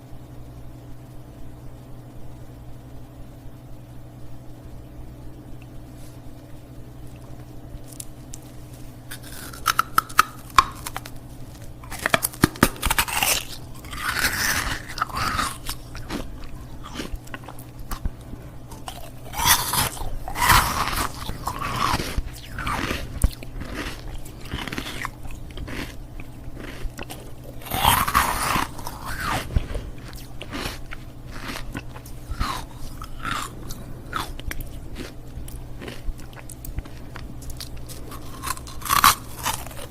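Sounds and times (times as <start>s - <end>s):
steady low hum: 0.0s - 39.9s
ice cubes crunched by teeth: 9.1s - 18.0s, 18.7s - 39.9s.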